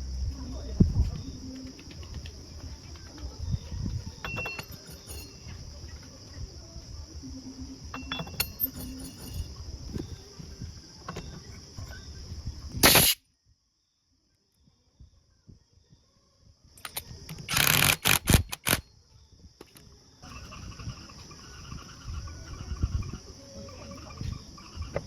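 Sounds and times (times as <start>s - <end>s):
insects chirring: 0.0s - 25.0s
short loud burst: 12.8s - 13.2s.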